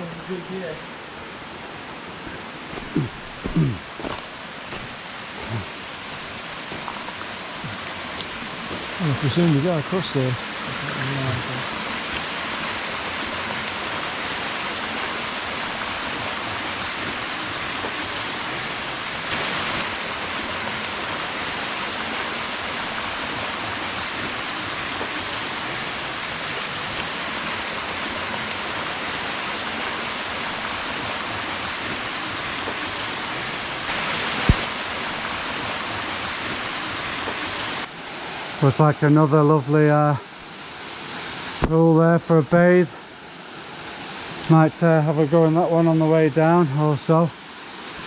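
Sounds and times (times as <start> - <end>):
falling rain: 0.0 - 48.0
river water rushing: 0.0 - 48.0.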